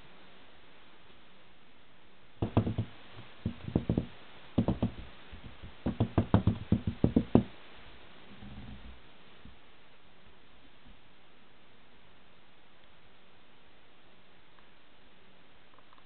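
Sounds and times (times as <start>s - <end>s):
quick knocking: 2.4s - 7.5s.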